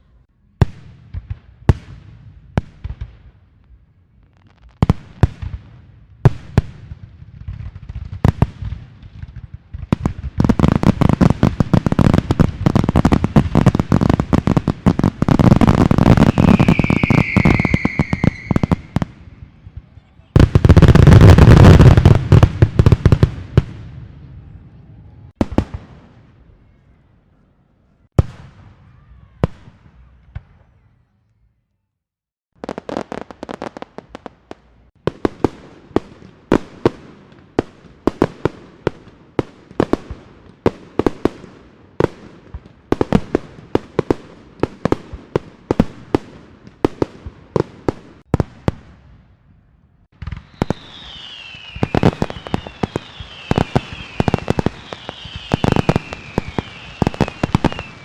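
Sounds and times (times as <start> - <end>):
fireworks bangs and pops: 0.6 - 24.2, 25.3 - 26.4, 28.1 - 30.8, 32.6 - 49.2, 50.0 - 58.0
fireworks falling whistles: 10.5 - 19.6, 50.2 - 58.0.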